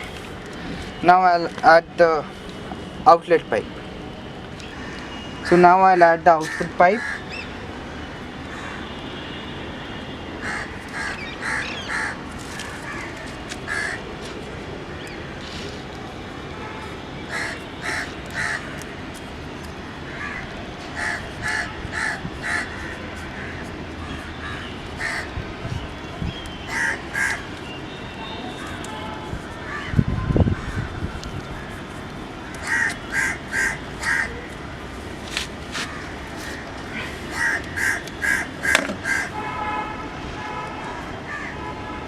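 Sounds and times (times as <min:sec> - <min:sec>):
crows cawing: 0:06.4 - 0:07.3, 0:10.4 - 0:12.2, 0:12.8 - 0:14.0, 0:17.3 - 0:18.8, 0:20.1 - 0:25.4, 0:26.7 - 0:27.4, 0:32.5 - 0:34.5, 0:35.8 - 0:39.4.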